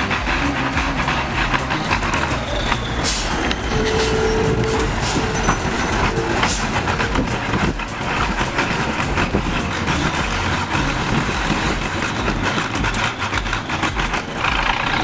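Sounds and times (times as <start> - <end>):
heavy truck engine rattling: 0.0 - 15.0.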